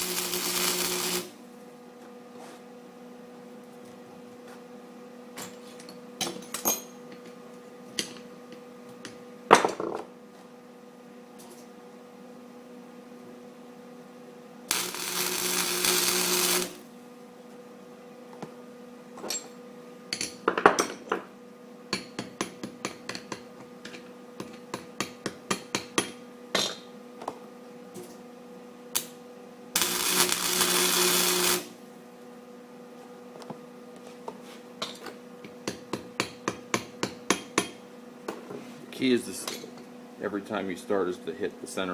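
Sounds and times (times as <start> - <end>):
arc welding crackle: 0.0 - 1.4, 14.7 - 16.9, 29.0 - 29.2, 29.8 - 31.8
steady low hum: 0.0 - 2.0, 14.3 - 17.4.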